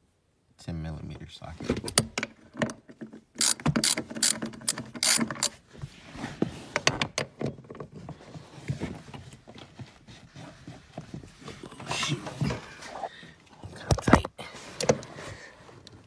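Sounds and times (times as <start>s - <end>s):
hand ratchet clicking: 3.4s - 5.5s.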